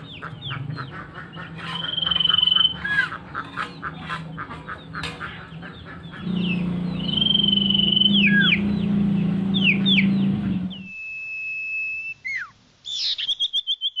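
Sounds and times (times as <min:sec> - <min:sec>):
loud low steady hum: 0:00.0 - 0:10.9
bird whistling call: 0:01.6 - 0:03.2, 0:06.2 - 0:08.8, 0:09.5 - 0:14.0.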